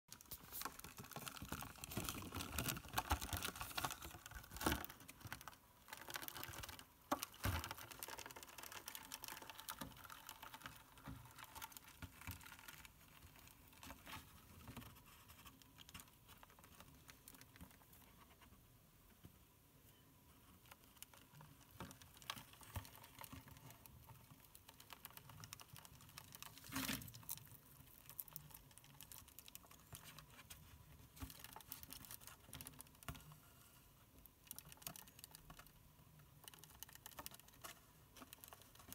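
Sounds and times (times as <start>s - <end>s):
lizard chewing and crunching: 21.3s - 30.4s.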